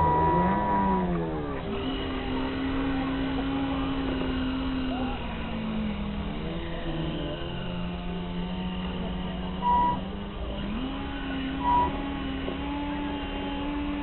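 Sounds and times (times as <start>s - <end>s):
short high beeps: 0.0s - 0.8s, 9.6s - 10.0s, 11.7s - 11.9s
electric boat motor humming: 0.0s - 14.0s.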